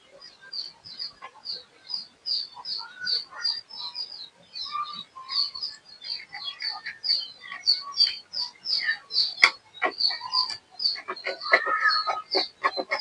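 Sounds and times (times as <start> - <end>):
small birds chirping: 0.0 - 13.0
lower bird calls: 4.6 - 13.0.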